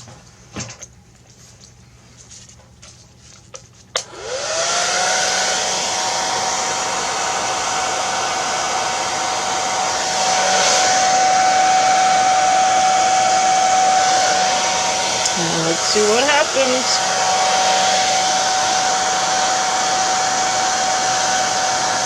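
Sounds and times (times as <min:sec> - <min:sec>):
hair dryer blowing: 0:04.0 - 0:22.0.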